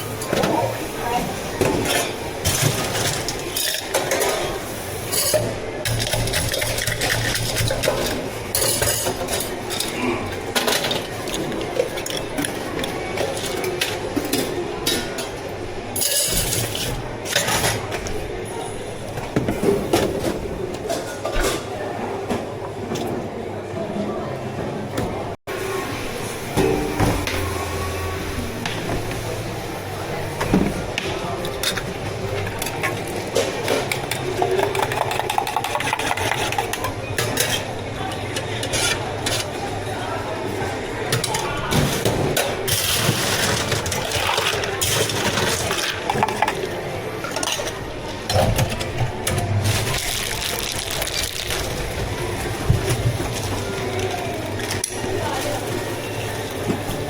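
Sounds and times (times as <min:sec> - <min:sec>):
cups and utensils clinking: 0:01.6 - 0:15.4, 0:30.4 - 0:39.6
cups and utensils clicking: 0:32.6 - 0:39.4.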